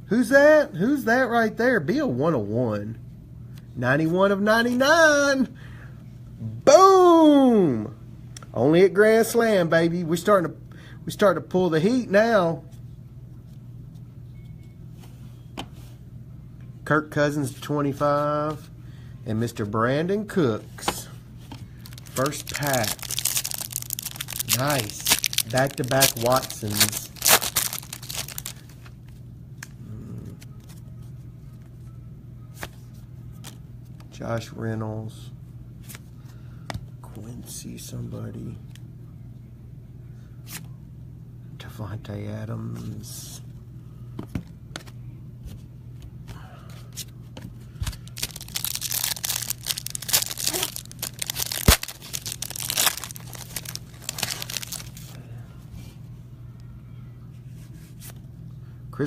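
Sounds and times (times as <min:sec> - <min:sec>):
steady low hum: 0:00.0 - 0:59.0
card pack wrapper crinkling and tearing: 0:21.8 - 0:28.9, 0:47.8 - 0:55.2.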